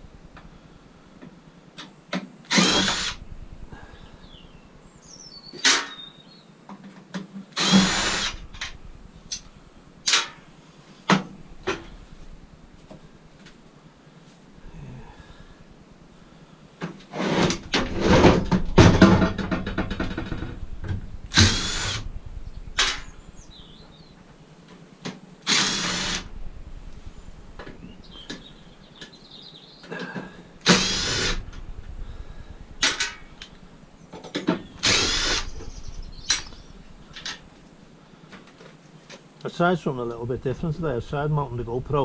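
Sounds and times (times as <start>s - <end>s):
cordless drill whirring: 2.5s - 3.2s, 7.6s - 8.6s, 21.3s - 22.0s, 25.5s - 26.3s, 30.6s - 31.4s, 34.8s - 35.7s
sharp metal knocks: 17.5s - 21.7s.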